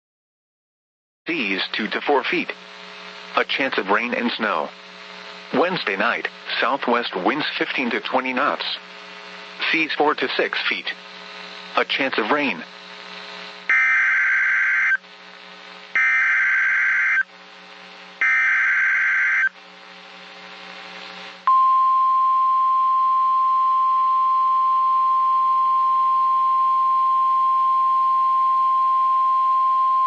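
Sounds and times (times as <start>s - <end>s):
alert data bursts: 13.7s - 15.0s, 16.0s - 17.2s, 18.2s - 19.5s
steady alarm tone: 13.7s - 15.0s, 16.0s - 17.2s, 18.2s - 19.6s.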